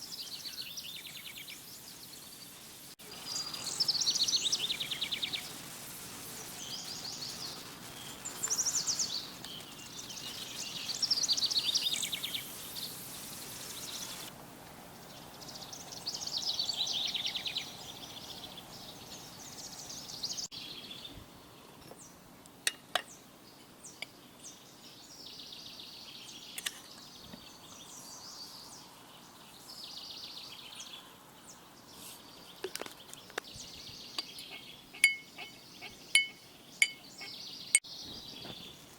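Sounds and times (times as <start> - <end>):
songbirds singing: 0.0 - 38.9.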